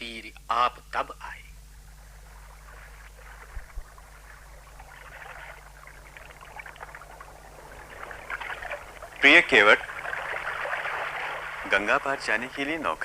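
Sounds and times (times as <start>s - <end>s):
soft low thumps: 1.6s - 9.2s
river water lapping: 1.8s - 13.0s.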